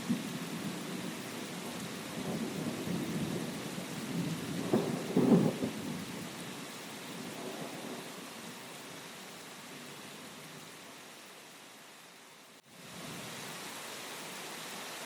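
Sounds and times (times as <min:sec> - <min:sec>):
steady rain hiss: 0:00.0 - 0:15.0
rolling thunder: 0:00.1 - 0:06.2
sharp thunder crack: 0:04.1 - 0:05.9.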